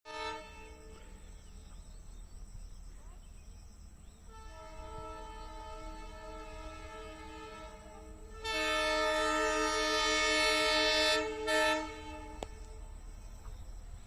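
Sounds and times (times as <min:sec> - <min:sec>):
diesel locomotive horn blast: 0:00.1 - 0:01.6, 0:04.2 - 0:13.6.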